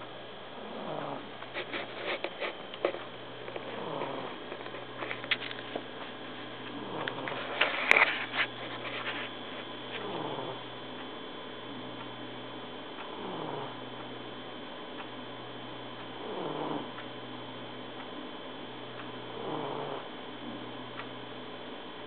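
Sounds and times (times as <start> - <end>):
cat snoring: 0.5 - 2.2, 3.6 - 4.4, 6.7 - 7.6, 10.0 - 10.6, 13.1 - 13.9, 16.2 - 17.0, 19.3 - 20.2.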